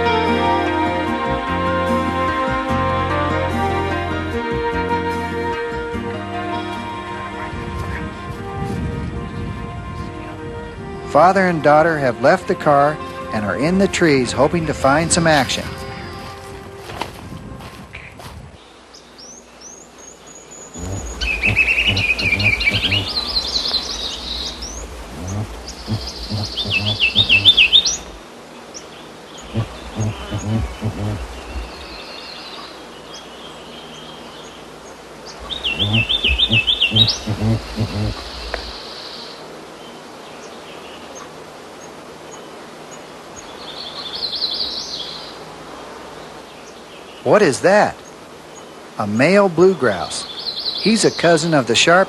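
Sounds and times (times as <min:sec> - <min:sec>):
songbirds chirping trills: 0:00.0 - 0:52.0
rhythmic low pulsing: 0:20.8 - 0:28.2, 0:29.4 - 0:32.0, 0:35.4 - 0:38.8.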